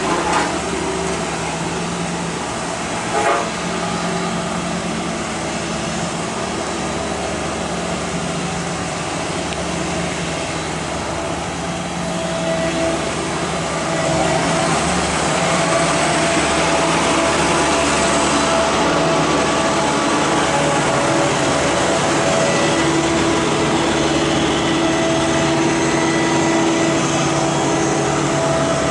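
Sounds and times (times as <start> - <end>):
machinery engine running: 0.0 - 28.9.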